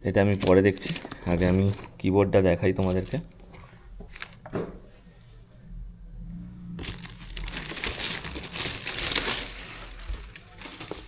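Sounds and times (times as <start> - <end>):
packaging crinkling: 0.4 - 2.0, 2.8 - 3.3, 6.8 - 11.0.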